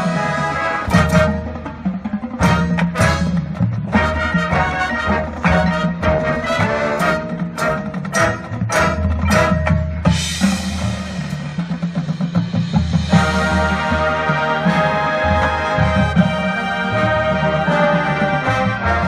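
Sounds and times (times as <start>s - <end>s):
marching band playing: 0.0s - 19.0s
sharp accented percussion hits: 7.0s - 14.2s.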